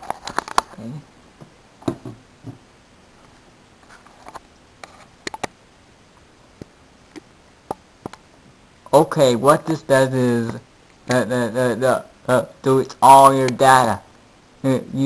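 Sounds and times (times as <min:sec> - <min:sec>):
room background hiss: 0:00.0 - 0:15.0
soft knocks: 0:01.4 - 0:02.6.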